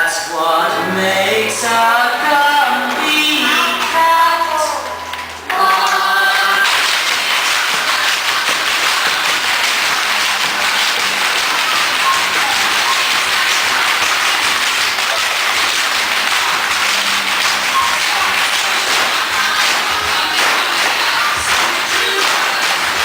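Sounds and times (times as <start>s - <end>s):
group of people applauding: 0.8s - 23.0s.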